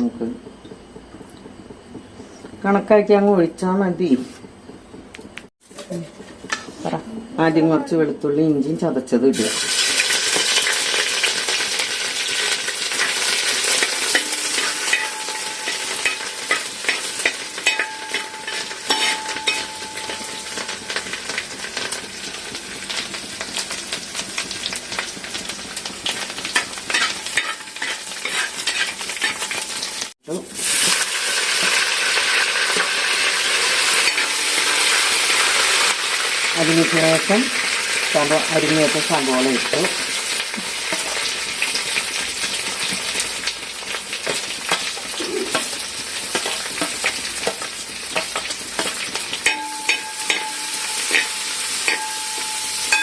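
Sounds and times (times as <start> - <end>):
garlic sizzling in oil: 9.3 - 53.0
spoon stirring against pan: 12.8 - 21.2, 26.4 - 29.9, 44.2 - 53.0.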